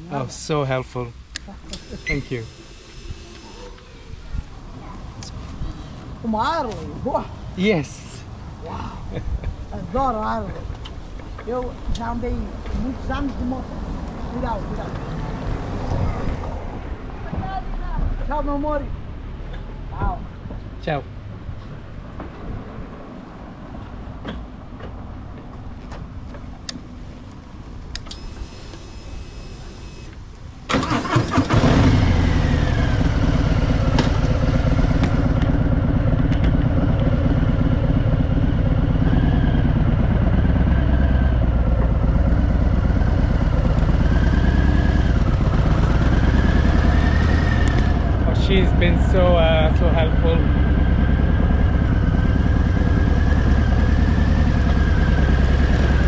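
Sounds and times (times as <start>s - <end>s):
motorcycle engine starting and idling: 1.6s - 3.8s, 26.6s - 56.0s.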